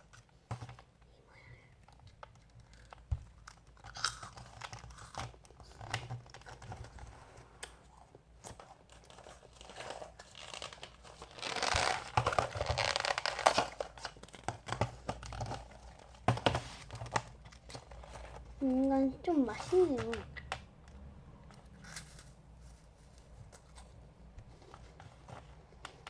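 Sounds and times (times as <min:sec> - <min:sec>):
plastic packaging crinkling: 0:08.6 - 0:20.6.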